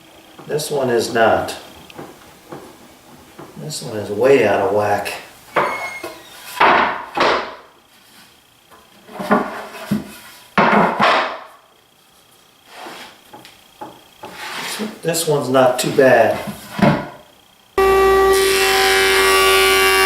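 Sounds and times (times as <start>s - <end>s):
wood knocking and scraping on wood: 0.4s - 3.6s, 9.1s - 11.4s, 12.7s - 14.9s.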